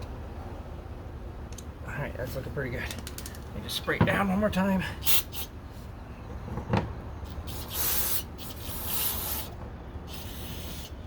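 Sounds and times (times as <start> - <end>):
aerosol spray hissing bursts: 7.4 - 11.0.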